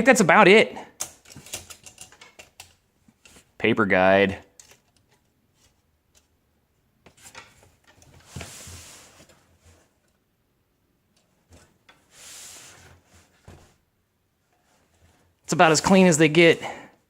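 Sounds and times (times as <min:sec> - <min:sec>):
brief sliding rubs: 0:12.1 - 0:13.3.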